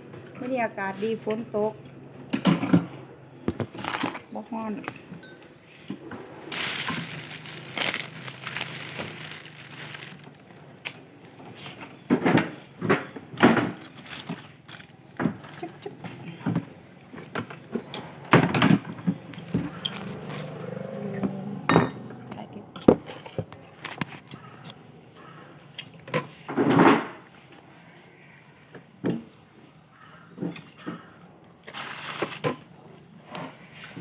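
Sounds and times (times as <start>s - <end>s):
crinkling rustle: 3.6s - 4.4s, 6.5s - 12.0s, 13.6s - 15.8s, 19.3s - 20.8s.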